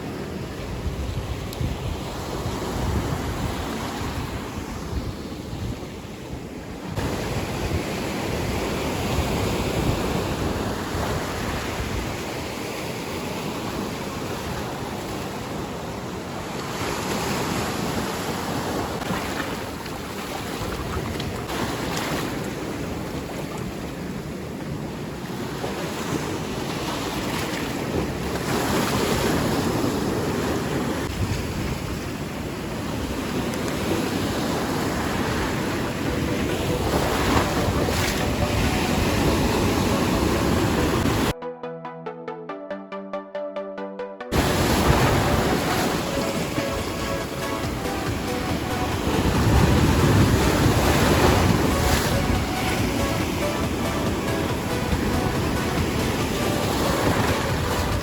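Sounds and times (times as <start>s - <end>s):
wind buffeting microphone: 0.0s - 16.4s, 17.4s - 41.3s, 44.4s - 58.0s
waves breaking on shore: 0.0s - 41.4s, 44.3s - 58.0s.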